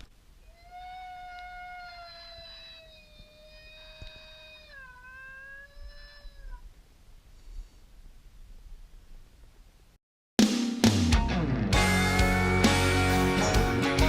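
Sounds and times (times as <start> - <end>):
howl-like predator call wail: 0.4 - 6.7.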